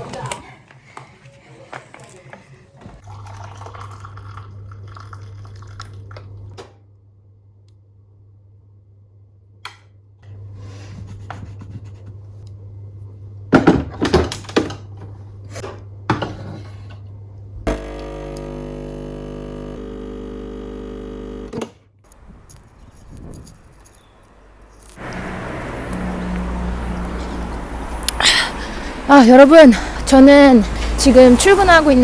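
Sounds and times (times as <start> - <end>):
electric buzz from appliance: 17.7 - 23.3
low hum: 22.1 - 31.0.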